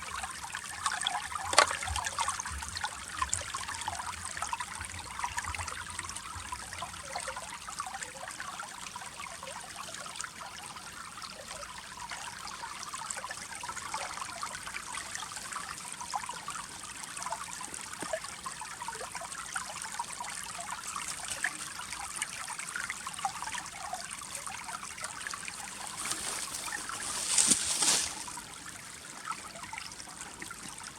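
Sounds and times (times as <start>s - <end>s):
river water trickling among ice: 0.0s - 30.9s
small bubbling crackles: 24.2s - 28.5s.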